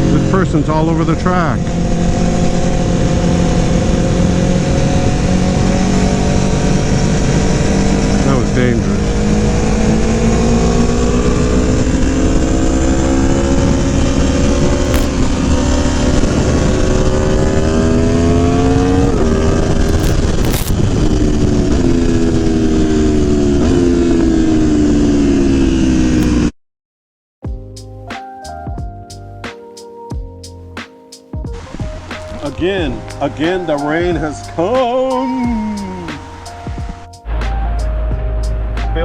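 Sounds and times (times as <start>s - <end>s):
motorcycle engine revving: 0.0s - 26.5s, 31.5s - 37.4s
wind rushing: 1.3s - 25.4s, 31.5s - 37.4s.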